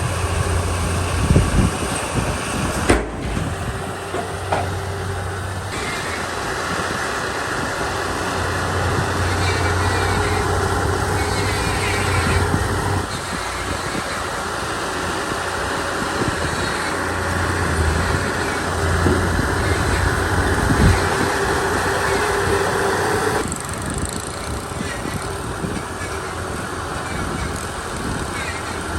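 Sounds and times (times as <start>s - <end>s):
bulldozer diesel engine under load: 0.0s - 28.9s
sharp machine knocks: 2.7s - 4.9s.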